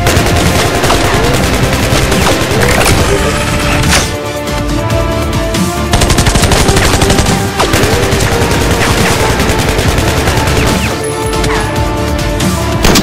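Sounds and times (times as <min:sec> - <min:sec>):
rapid gunfire sound effects: 0:00.0 - 0:03.9, 0:05.9 - 0:11.0
background music: 0:00.0 - 0:13.0.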